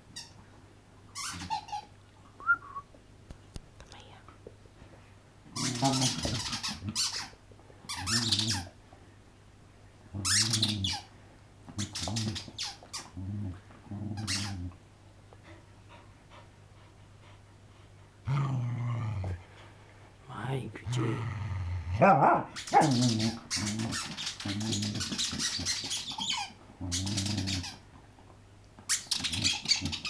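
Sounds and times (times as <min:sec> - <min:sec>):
dog chewing squeaky toy: 0:01.1 - 0:01.9, 0:05.6 - 0:08.7, 0:14.2 - 0:14.6, 0:22.6 - 0:27.8, 0:28.9 - 0:30.0.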